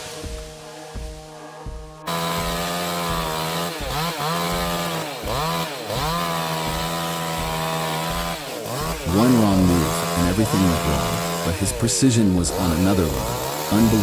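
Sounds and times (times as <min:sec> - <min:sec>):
chainsaw cutting into tree: 0:00.0 - 0:14.0.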